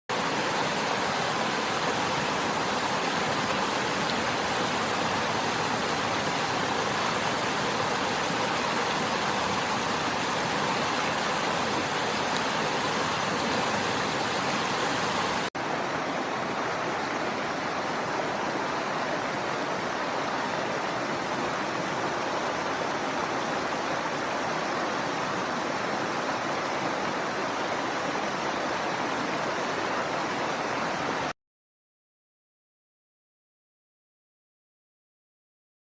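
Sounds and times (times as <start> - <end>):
water rushing from waterfall: 0.1 - 31.3.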